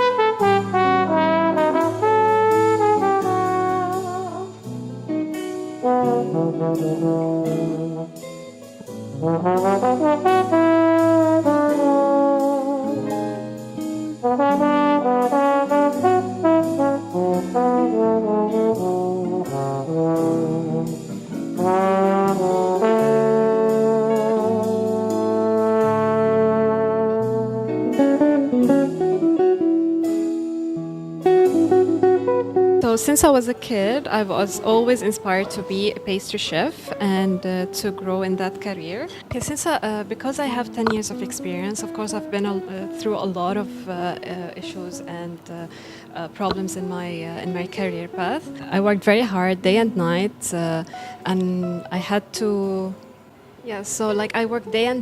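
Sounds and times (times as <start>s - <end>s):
jazzy brass music: 0.0s - 50.8s.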